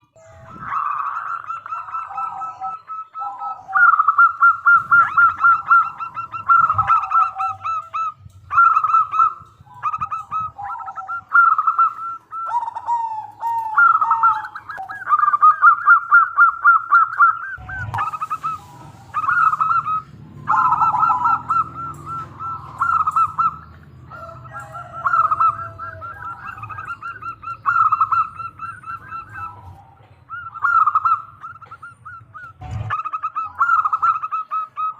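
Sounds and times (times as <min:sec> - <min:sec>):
dove cooing: 0:00.0 - 0:34.9
low steady rumble: 0:17.6 - 0:33.3.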